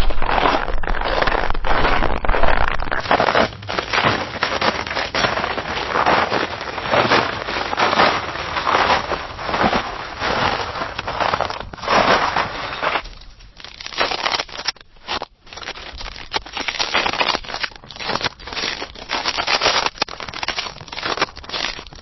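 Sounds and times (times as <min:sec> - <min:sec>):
footsteps crunching in snow: 0:00.0 - 0:14.3.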